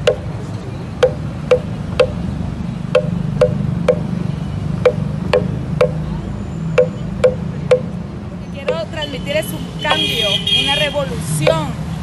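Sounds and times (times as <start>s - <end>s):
hard ringing knocks: 0.0s - 0.3s, 1.0s - 2.3s, 2.9s - 4.2s, 4.8s - 6.0s, 6.8s - 8.0s.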